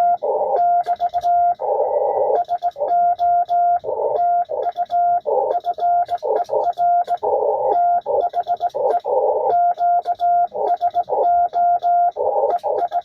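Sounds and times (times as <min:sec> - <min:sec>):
radio band noise hiss: 0:00.0 - 0:00.6, 0:01.6 - 0:02.9, 0:06.1 - 0:07.7, 0:08.7 - 0:09.5
morse code tone: 0:00.0 - 0:13.0.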